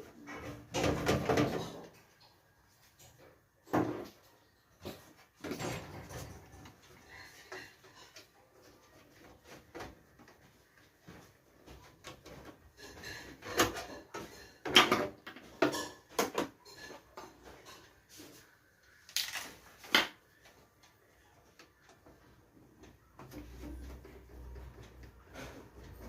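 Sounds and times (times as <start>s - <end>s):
computer parts clicking and rattling: 19.0s - 20.2s.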